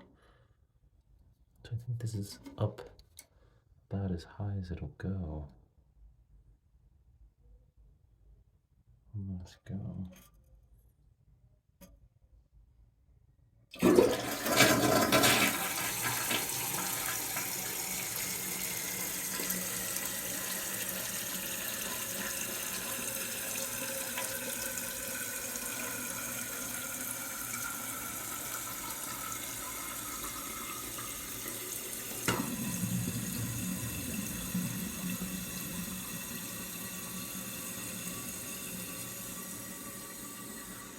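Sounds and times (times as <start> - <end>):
toilet refilling: 13.7 - 40.9
water gurgling: 13.8 - 40.9.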